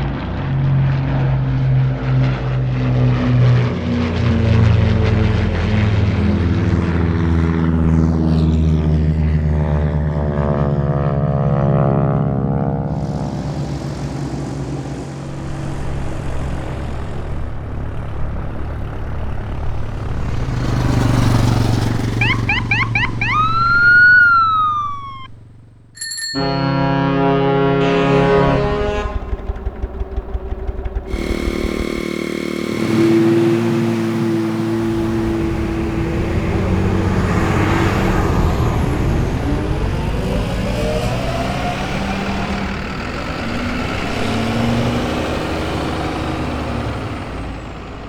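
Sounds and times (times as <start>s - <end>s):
passing engine drone: 0.0s - 25.8s, 26.4s - 48.0s
steady engine running: 11.6s - 48.0s
siren wailing: 21.9s - 25.5s.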